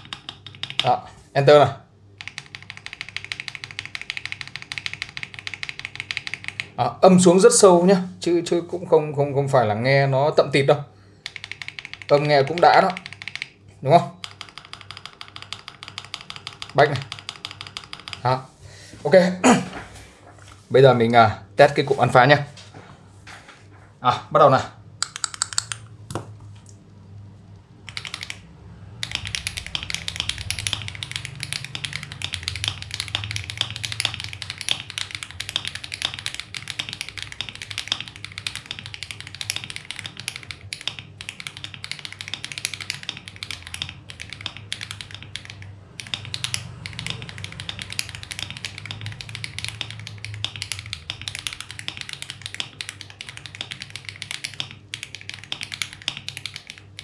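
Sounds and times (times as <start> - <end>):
mechanical keyboard typing: 0.0 - 1.0, 2.2 - 7.4, 11.2 - 18.4, 25.0 - 25.9, 27.8 - 57.0.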